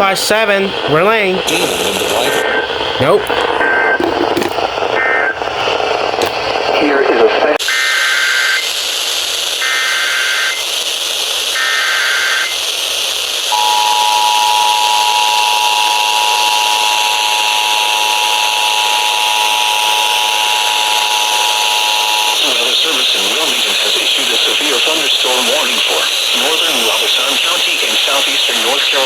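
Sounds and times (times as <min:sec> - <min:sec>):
static hiss: 0:00.0 - 0:29.0
warbling data bursts: 0:01.2 - 0:05.4, 0:13.5 - 0:29.0
two-tone attention signal: 0:13.5 - 0:22.8.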